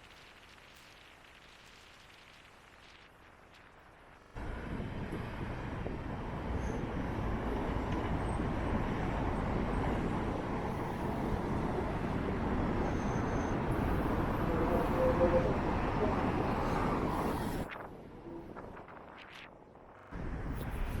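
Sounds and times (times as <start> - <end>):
wind buffeting microphone: 4.4 - 21.0.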